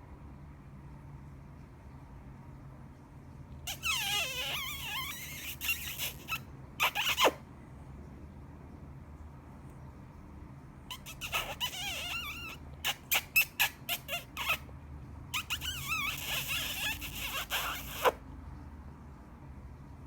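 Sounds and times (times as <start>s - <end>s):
lip smacks: 3.7s - 7.4s
squeaky kissing noises: 3.7s - 7.4s, 10.9s - 14.7s, 15.3s - 18.2s.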